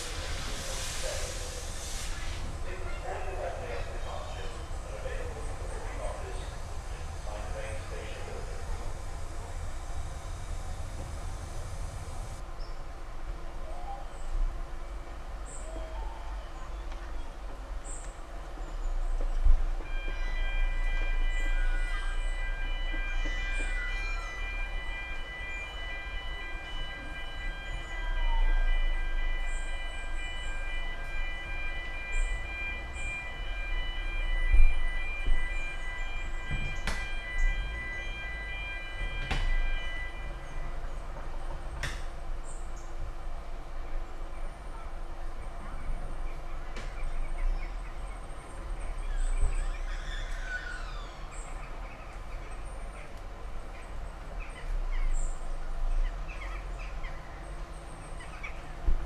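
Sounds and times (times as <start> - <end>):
steady low rumble: 0.0 - 12.5
steam train rumble: 0.0 - 59.0
birds chirping: 1.2 - 12.4.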